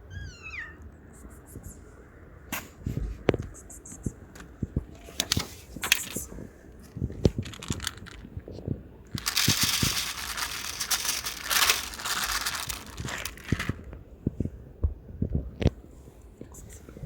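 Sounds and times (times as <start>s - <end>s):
packaging crinkling by hand: 5.2s - 14.0s.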